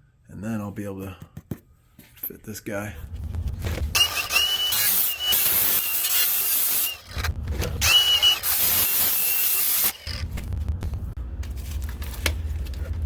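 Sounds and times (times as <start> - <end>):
angle grinder cutting metal pipe: 3.9 - 10.3.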